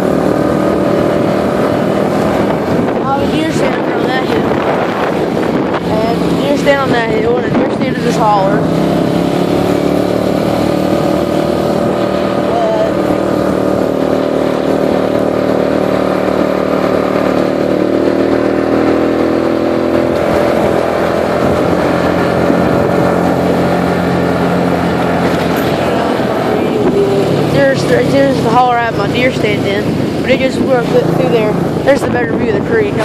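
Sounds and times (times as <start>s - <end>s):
atv engine running: 0.0s - 33.0s.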